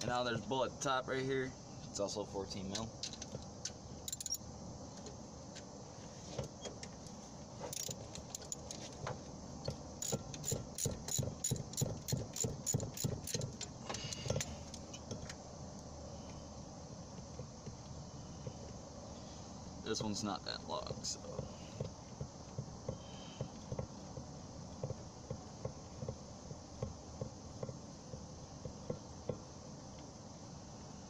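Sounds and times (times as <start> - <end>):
metal clinks: 4.1 - 4.4, 7.7 - 8.8
socket ratchet clicking: 4.1 - 4.4, 7.8 - 8.7, 10.0 - 13.5.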